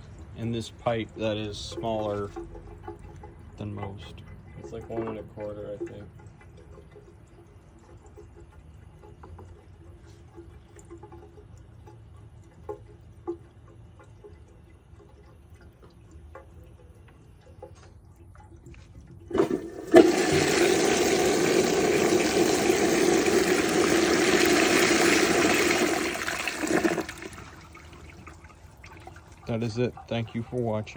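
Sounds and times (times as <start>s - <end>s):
toilet flush water rushing: 19.1s - 30.9s.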